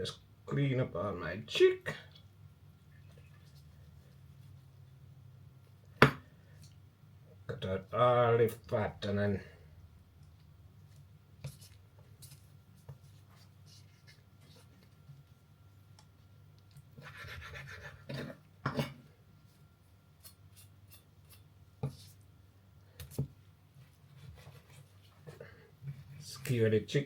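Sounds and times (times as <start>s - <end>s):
knife scraping raw chicken: 17.0s - 19.0s, 20.2s - 22.2s.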